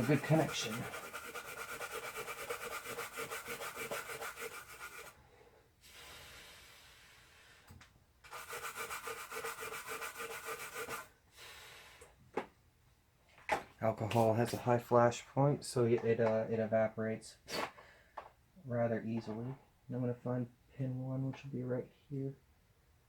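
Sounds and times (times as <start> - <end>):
toothbrush scrubbing circuit board: 0.0 - 5.1, 8.3 - 11.1.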